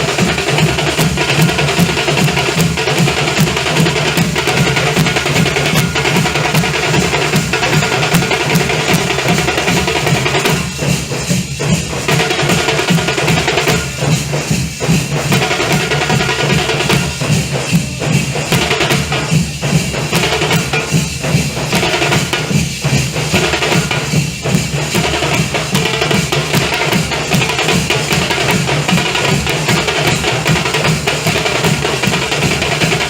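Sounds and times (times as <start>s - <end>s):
drum ensemble drumming fast: 0.0s - 33.0s.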